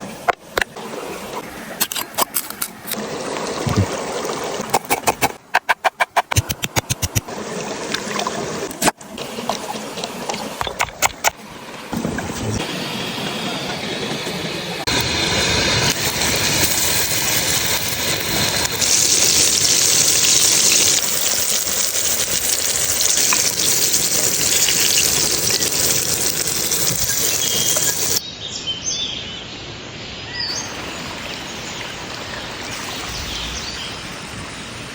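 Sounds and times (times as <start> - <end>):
food deep-frying in oil: 14.9 - 28.2.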